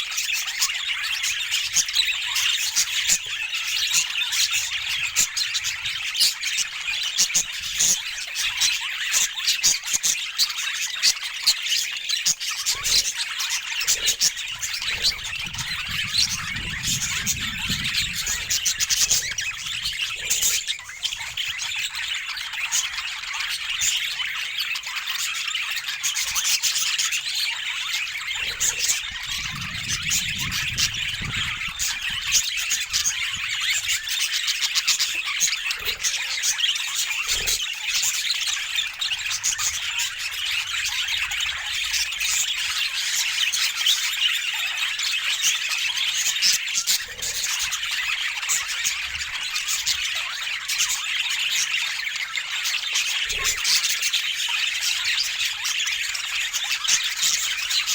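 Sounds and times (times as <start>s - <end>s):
budgerigars chattering and chirping: 0.0s - 57.9s.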